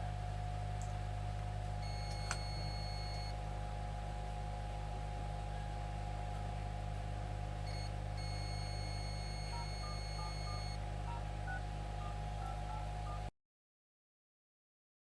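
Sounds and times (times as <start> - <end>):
steady electrical hum: 0.0 - 13.3
short electronic beeps: 1.8 - 3.3, 7.7 - 13.3
long high-pitched beep: 1.8 - 3.4, 7.7 - 13.3.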